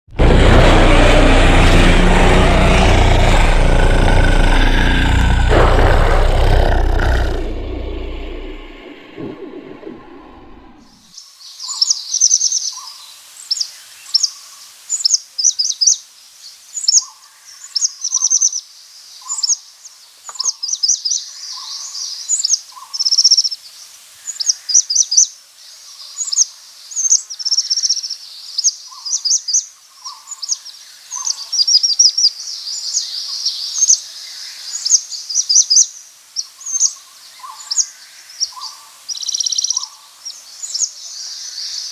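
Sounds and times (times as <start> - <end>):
low rumble: 0.1 - 11.1.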